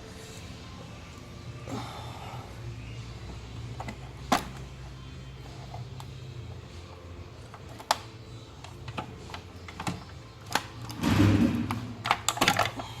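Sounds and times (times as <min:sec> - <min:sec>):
plastic and metal parts clicking: 0:12.0 - 0:13.0.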